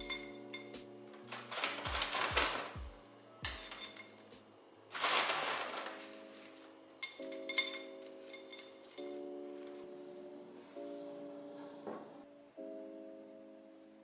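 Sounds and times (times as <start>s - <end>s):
dishes and utensils clattering: 0.0s - 9.4s
soft background music: 0.0s - 14.0s.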